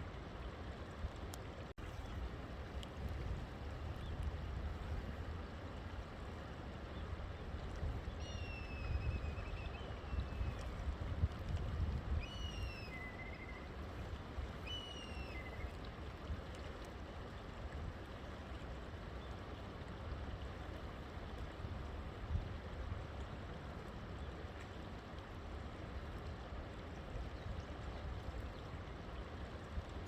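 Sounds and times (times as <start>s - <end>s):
bird whistling: 12.3s - 13.6s, 14.7s - 15.6s.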